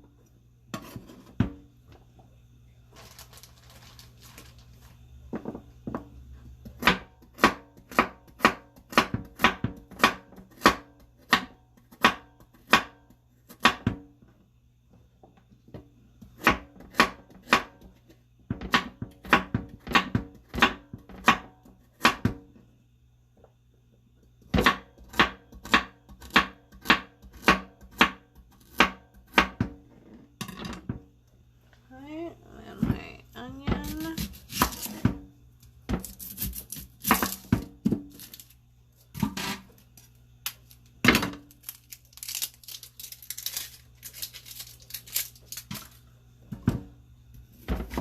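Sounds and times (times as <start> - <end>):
knife chopping on cutting board: 0.7 - 1.6, 5.9 - 14.0, 24.5 - 29.8, 33.7 - 35.2, 35.9 - 38.2.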